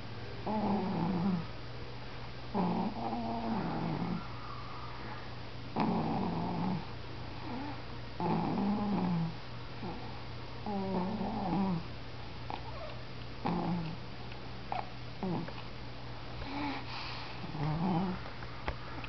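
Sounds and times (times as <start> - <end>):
steady low hum: 0.0 - 19.0
person snoring: 2.6 - 4.3.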